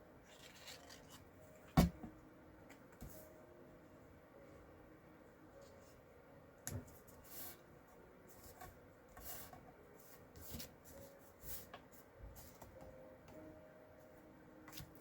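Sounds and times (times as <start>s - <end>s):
paper rustling: 0.3s - 1.3s.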